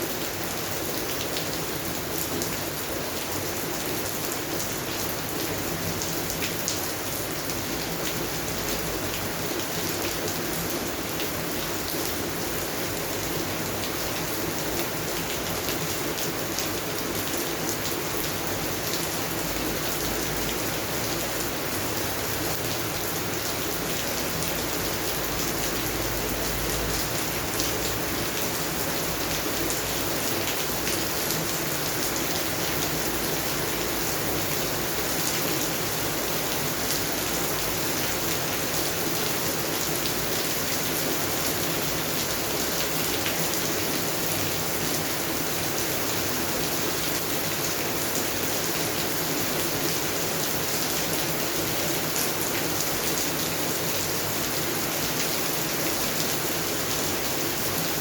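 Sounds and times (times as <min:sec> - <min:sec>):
steady rain on plants: 0:00.0 - 0:58.0.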